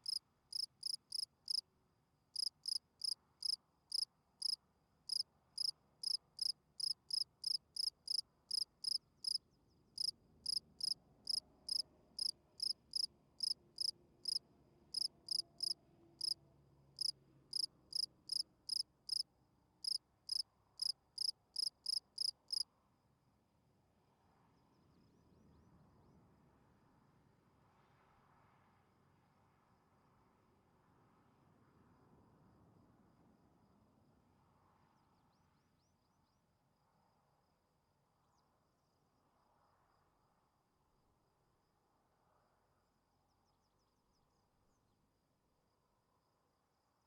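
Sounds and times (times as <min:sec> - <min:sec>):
cricket chirping: 0:00.0 - 0:01.6, 0:02.4 - 0:09.4, 0:10.0 - 0:16.4, 0:17.0 - 0:19.2, 0:19.8 - 0:22.6.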